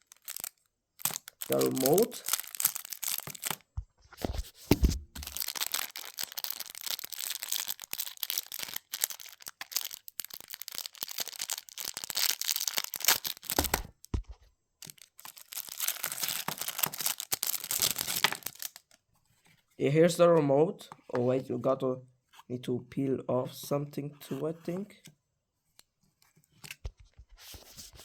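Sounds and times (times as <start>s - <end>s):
plastic packaging crinkling and tearing: 0.0s - 3.6s, 4.3s - 14.1s, 14.8s - 19.0s.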